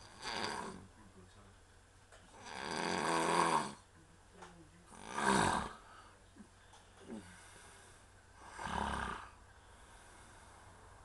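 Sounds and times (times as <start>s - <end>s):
man snoring heavily: 0.0s - 0.8s, 2.4s - 3.8s, 4.9s - 5.8s, 8.4s - 9.4s.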